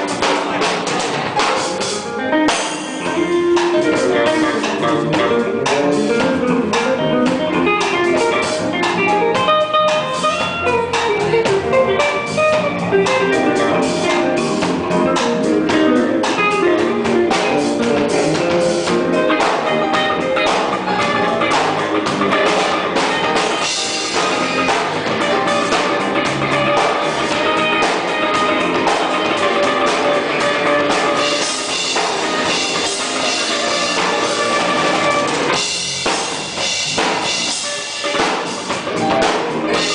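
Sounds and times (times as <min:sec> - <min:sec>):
gospel orchestra playing: 0:00.0 - 0:39.9.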